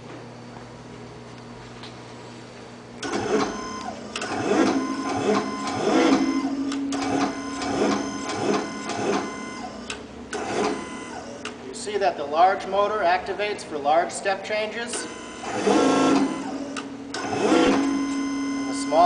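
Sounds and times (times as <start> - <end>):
electric motors and pump whirring: 0.0 - 19.0.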